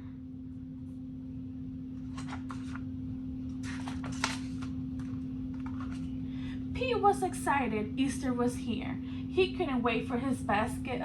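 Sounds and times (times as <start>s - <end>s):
steady low hum: 0.0s - 11.0s
book pages rustling: 2.0s - 6.2s.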